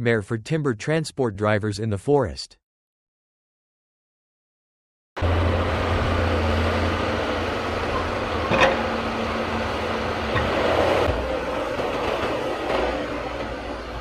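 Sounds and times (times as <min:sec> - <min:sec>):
diesel engine running: 0:05.2 - 0:14.0.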